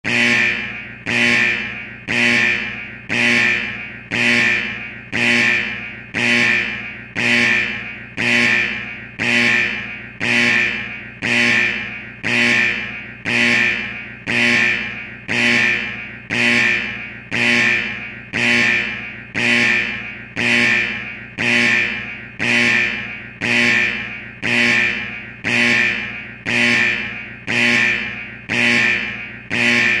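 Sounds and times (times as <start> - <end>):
repeating alarm tone: 0.0 - 30.0.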